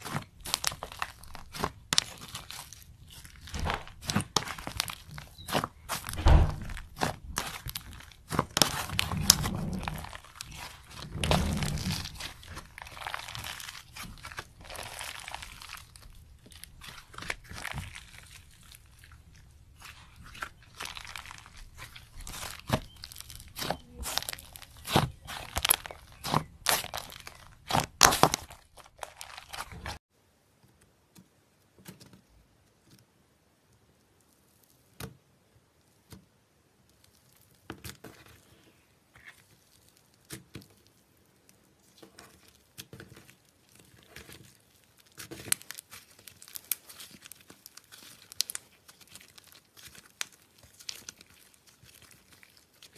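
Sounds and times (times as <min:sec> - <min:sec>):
slime crackling and popping: 0:00.0 - 0:30.0, 0:36.8 - 0:38.5, 0:39.1 - 0:52.9.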